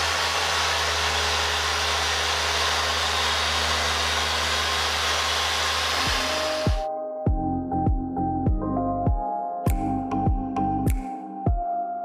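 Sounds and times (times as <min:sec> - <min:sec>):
car polisher motor whirring: 0:00.0 - 0:06.9.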